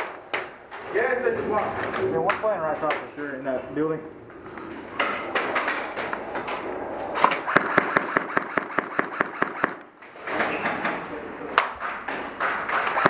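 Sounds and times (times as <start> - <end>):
rapid sharp clicks: 7.2 - 9.9, 12.7 - 13.0.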